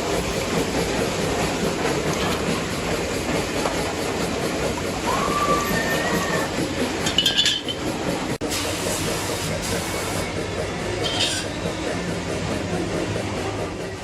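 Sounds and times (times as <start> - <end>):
workshop noise with low hum: 0.5 - 13.8
metal parts clinking: 7.0 - 7.8, 11.0 - 11.4.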